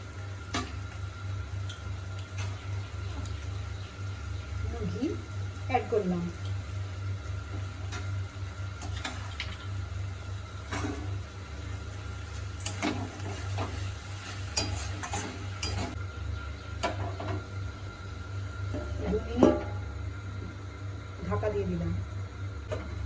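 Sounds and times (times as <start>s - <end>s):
light sizzle: 0.0s - 23.0s
steady low hum: 0.0s - 23.0s
spatula scraping a cooking pan: 12.7s - 16.0s.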